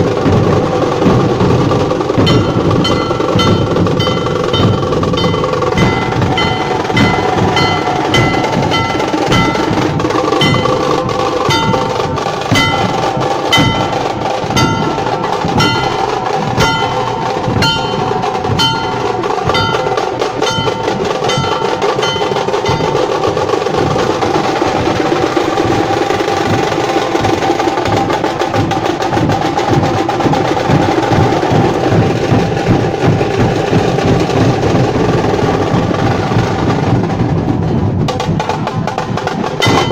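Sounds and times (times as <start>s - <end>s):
barrel drums drumming fast: 0.0s - 39.9s
ringing metal strike: 2.1s - 24.8s, 39.6s - 39.9s.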